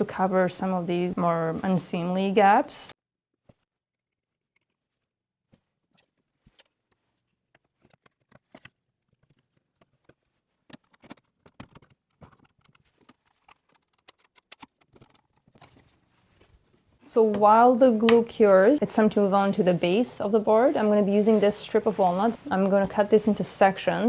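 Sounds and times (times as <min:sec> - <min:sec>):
wooden box parts clicking: 0:07.5 - 0:15.9.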